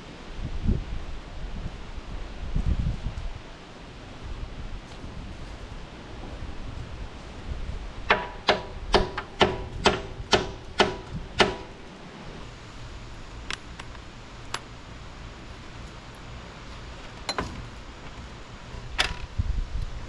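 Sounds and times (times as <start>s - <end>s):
hammer striking metal: 8.1s - 11.8s.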